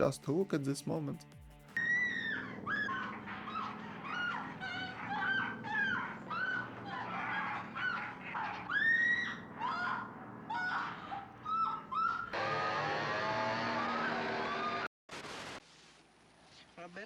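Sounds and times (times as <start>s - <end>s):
shrill pig-like squealing: 1.8s - 14.9s.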